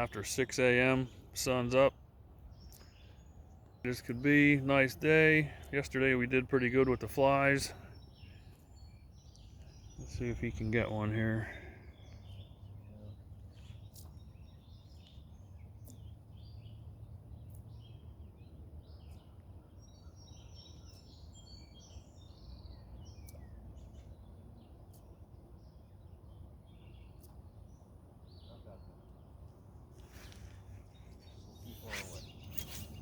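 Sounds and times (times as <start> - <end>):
bird chirps and calls: 30.0 - 33.0.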